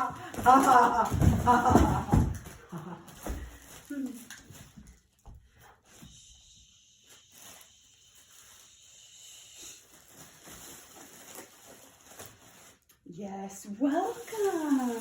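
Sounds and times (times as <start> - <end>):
soft rustles: 9.7 - 13.0.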